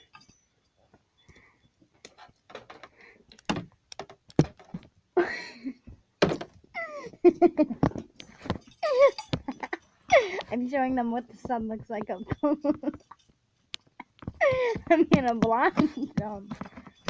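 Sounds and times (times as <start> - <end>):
objects knocking and thumping: 2.1 - 5.0, 5.8 - 10.6, 11.3 - 17.0.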